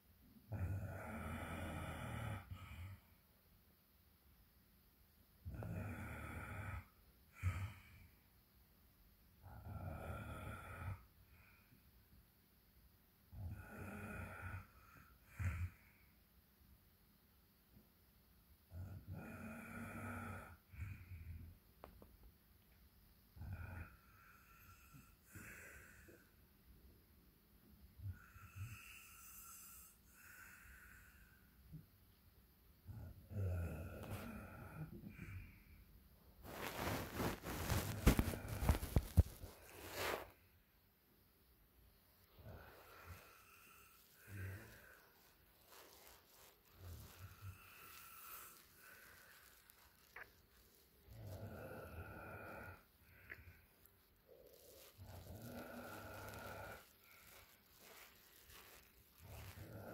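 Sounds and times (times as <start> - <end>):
rasping snores: 0.5 - 3.1, 5.4 - 8.0, 9.4 - 11.1, 13.3 - 15.9, 18.7 - 21.4, 23.4 - 26.3, 28.0 - 31.4, 32.9 - 35.6, 42.3 - 59.9
short low snorts: 36.4 - 40.4.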